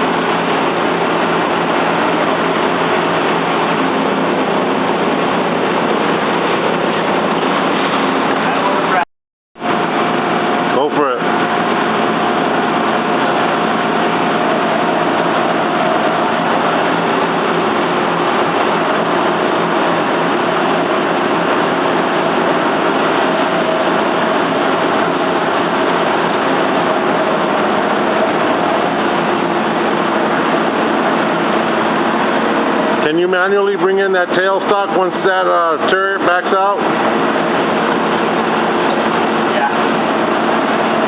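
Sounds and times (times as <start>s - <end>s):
lathe running: 9.6s - 41.0s.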